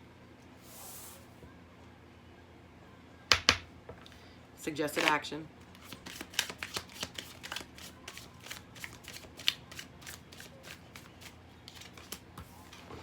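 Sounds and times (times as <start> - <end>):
cards being shuffled: 4.9 - 13.0.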